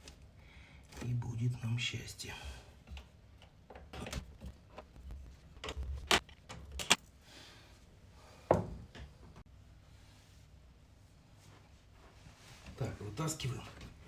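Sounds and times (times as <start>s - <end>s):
tools and plastic parts clicking: 5.6s - 7.1s.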